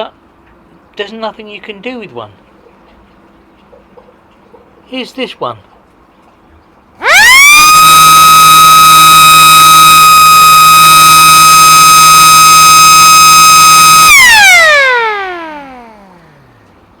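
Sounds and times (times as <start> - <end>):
siren wailing: 7.0 - 16.6.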